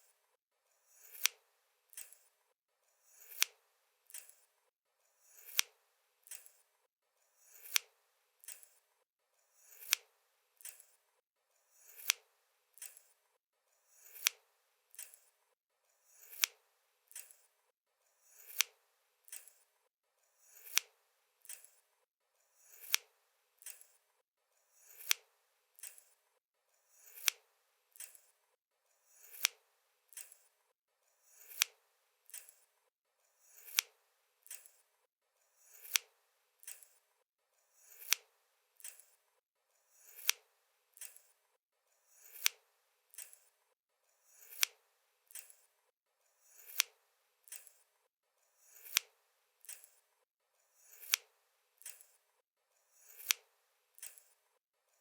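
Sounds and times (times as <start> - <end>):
scissors scraping and snipping: 0.9 - 2.4, 3.1 - 4.5, 5.2 - 6.7, 7.4 - 8.8, 9.6 - 11.0, 11.8 - 13.2, 13.9 - 15.4, 16.1 - 17.5, 18.2 - 19.7, 20.4 - 21.8, 22.6 - 24.0, 24.8 - 26.2, 26.9 - 28.4, 29.1 - 30.5, 31.3 - 32.7, 33.5 - 34.9, 35.6 - 37.0, 37.8 - 39.2, 40.0 - 41.4, 42.1 - 43.5, 44.3 - 45.7, 46.5 - 47.9, 48.6 - 50.0, 50.8 - 52.2, 53.0 - 54.4
scissors soft click: 1.1 - 2.3, 3.3 - 4.5, 5.4 - 6.6, 14.1 - 15.3.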